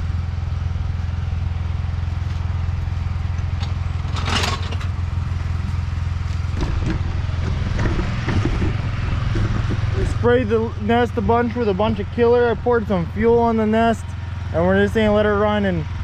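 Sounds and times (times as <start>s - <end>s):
mower engine running: 0.0s - 16.0s
light clatter: 3.5s - 5.0s.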